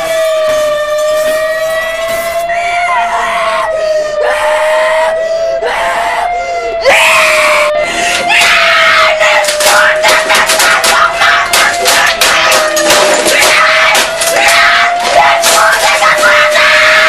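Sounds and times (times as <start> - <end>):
tornado warning siren: 0.0 - 17.0
cartoon characters screaming: 2.6 - 7.7, 8.3 - 17.0.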